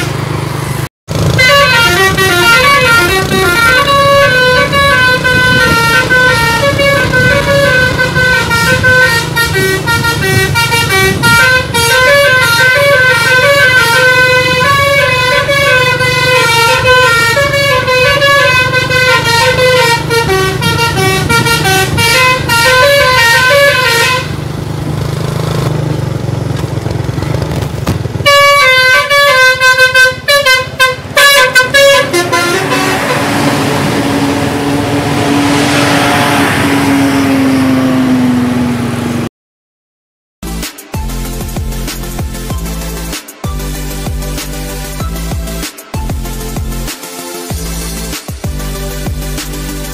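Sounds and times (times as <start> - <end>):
engine rumble: 0.0 - 39.3
multi-tone bus horn melody: 1.1 - 24.8, 28.1 - 39.3, 40.5 - 49.9.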